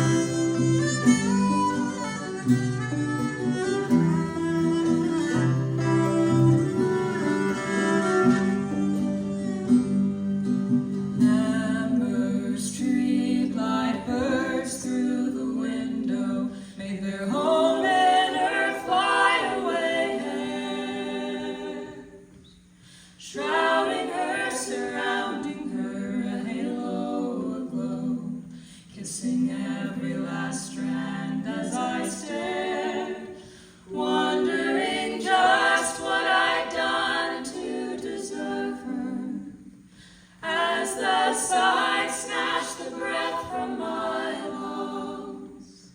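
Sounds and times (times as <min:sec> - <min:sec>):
vocal group singing a cappella: 0:00.0 - 0:02.1, 0:10.9 - 0:45.9
singer taking a breath: 0:22.7 - 0:23.2, 0:28.5 - 0:28.9, 0:33.4 - 0:33.9, 0:39.8 - 0:40.4.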